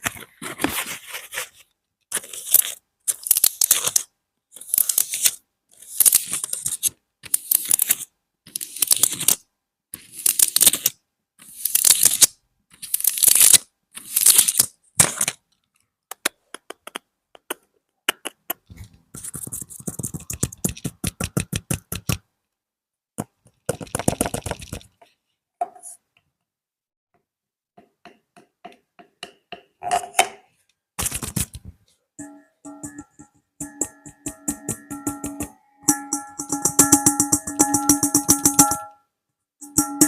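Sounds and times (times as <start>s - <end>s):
fast tapping: 32.7s - 38.9s.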